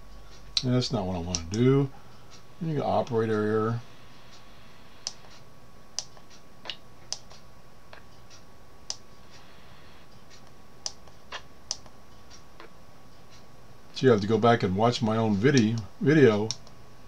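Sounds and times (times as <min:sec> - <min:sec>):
faint steady tone: 0:07.5 - 0:10.4.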